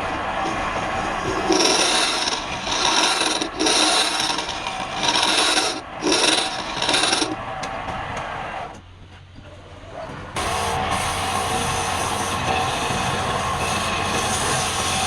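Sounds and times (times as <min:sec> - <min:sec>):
abrasive scraping on wood: 0:00.5 - 0:07.4.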